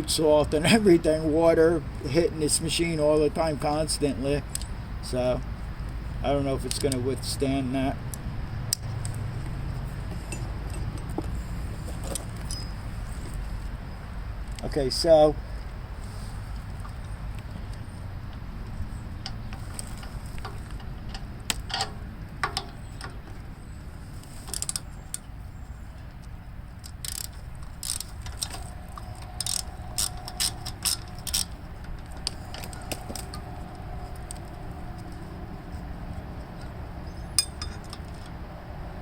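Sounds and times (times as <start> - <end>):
steady low rumble: 0.0 - 39.0
hand tools clinking on metal: 36.6 - 38.2.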